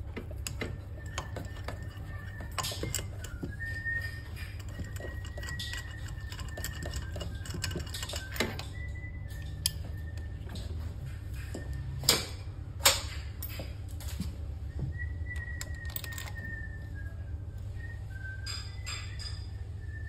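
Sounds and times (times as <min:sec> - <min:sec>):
hand tools clicking and knocking: 0:00.0 - 0:13.7, 0:15.4 - 0:16.6
steady low hum: 0:00.0 - 0:20.0
faint thin whistle: 0:00.5 - 0:12.0, 0:14.6 - 0:20.0.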